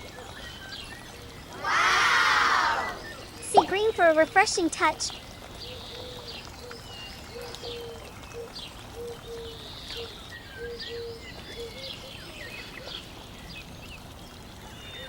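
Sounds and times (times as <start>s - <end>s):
birds calling: 1.2s - 13.1s.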